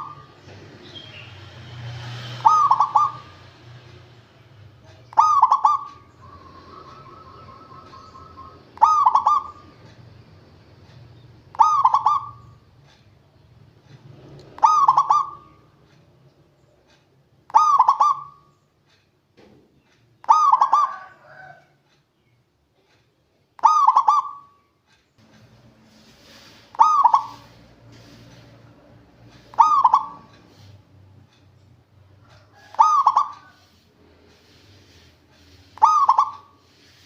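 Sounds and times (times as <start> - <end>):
dove cooing: 2.4 - 3.4, 5.1 - 9.8, 11.5 - 12.5, 14.6 - 15.6, 20.2 - 21.5, 23.6 - 24.6, 26.2 - 28.4, 29.1 - 30.8, 32.2 - 33.8, 34.9 - 37.0.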